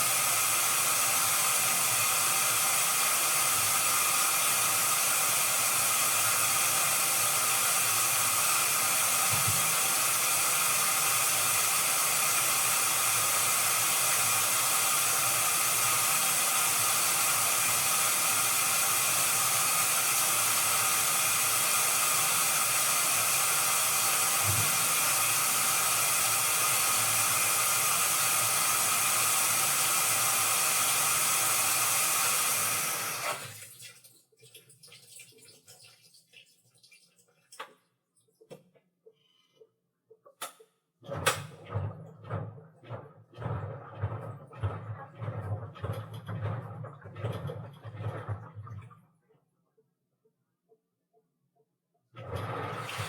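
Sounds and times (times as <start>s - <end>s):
washing machine running: 0.0s - 33.8s, 41.0s - 48.9s, 52.2s - 53.0s.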